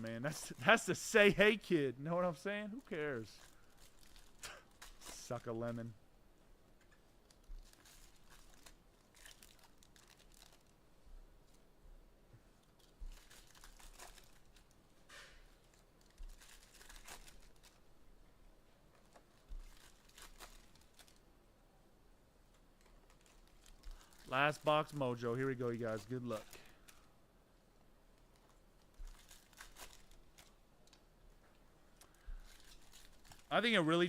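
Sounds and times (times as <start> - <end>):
foil wrappers tearing and crinkling: 2.2 - 5.9, 7.2 - 10.8, 12.7 - 14.8, 15.6 - 17.9, 19.1 - 21.2, 22.8 - 27.0, 28.4 - 31.0, 32.0 - 34.0.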